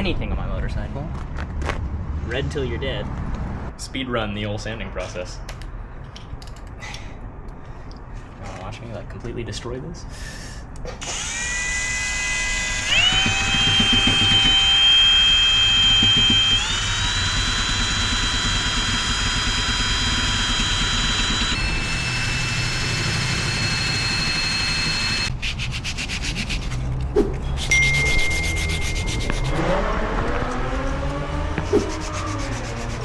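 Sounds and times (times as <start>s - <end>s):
power tool sanding: 11.0s - 26.8s, 27.6s - 33.0s.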